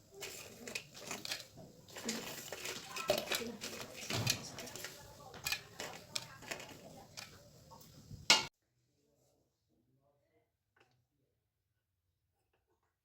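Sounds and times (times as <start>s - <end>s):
kitchenware clicking and clinking: 0.0s - 8.5s.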